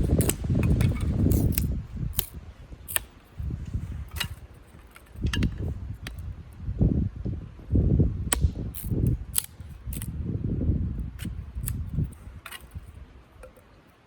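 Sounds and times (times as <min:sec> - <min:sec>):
sharp clicks and snaps: 0:00.0 - 0:03.1, 0:08.3 - 0:10.1, 0:11.2 - 0:12.8.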